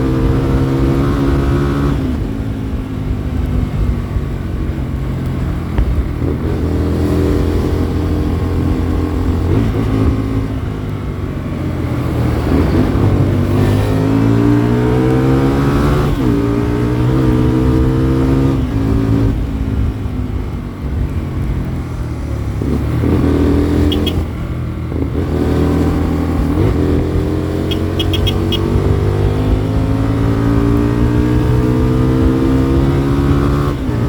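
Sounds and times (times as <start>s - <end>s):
motorcycle engine accelerating: 0.0s - 34.0s
wind noise on microphone: 28.4s - 34.0s.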